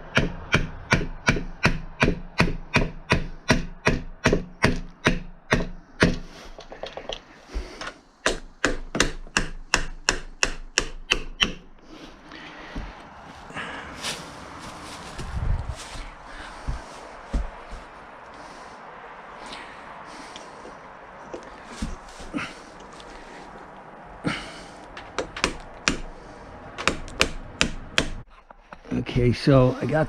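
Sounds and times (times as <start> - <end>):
mallet striking chisel: 0.1 - 6.2, 8.2 - 11.7, 25.1 - 26.1, 26.8 - 28.3.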